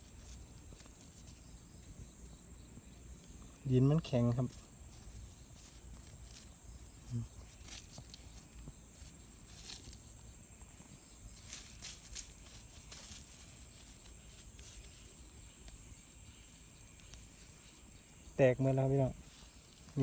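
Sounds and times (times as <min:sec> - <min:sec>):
insect droning: 0:00.0 - 0:20.0
hands scraping dry leaf litter: 0:11.4 - 0:15.8.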